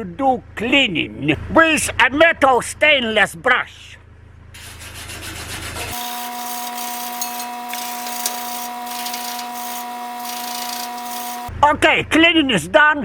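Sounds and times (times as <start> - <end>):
wire brush power tool whining: 5.9 - 11.5
wire brush scrubbing metal: 5.9 - 11.5.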